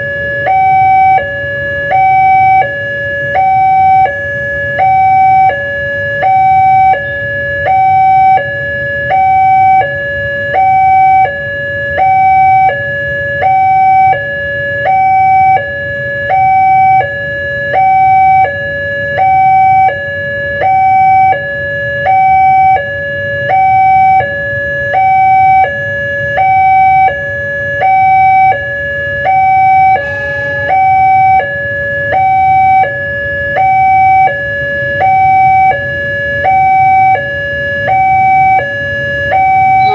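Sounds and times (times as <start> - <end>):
two-tone siren: 0.0 - 39.9
low hum: 29.4 - 33.3.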